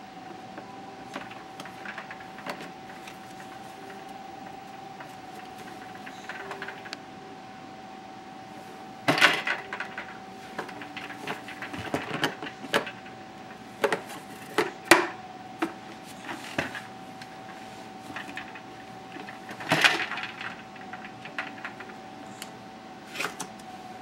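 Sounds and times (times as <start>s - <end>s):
faint steady hum: 0.0s - 24.0s
small hard objects knocking: 1.1s - 4.0s, 9.1s - 13.2s.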